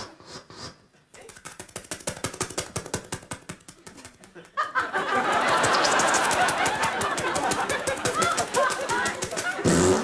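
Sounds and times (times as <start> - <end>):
spluttering mouth hiss: 5.6 - 6.5.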